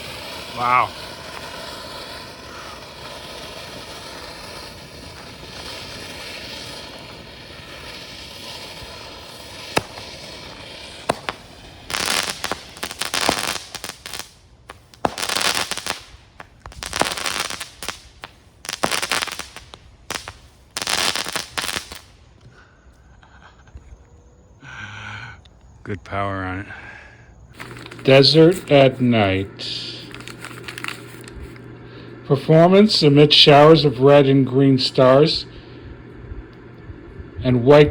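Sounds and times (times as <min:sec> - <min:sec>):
firework pops: 0:00.0 - 0:22.6, 0:27.6 - 0:28.9, 0:29.6 - 0:31.8
crackling firework bursts: 0:00.0 - 0:23.5, 0:26.9 - 0:37.9
firework fountain hissing: 0:00.0 - 0:23.7, 0:26.8 - 0:37.9.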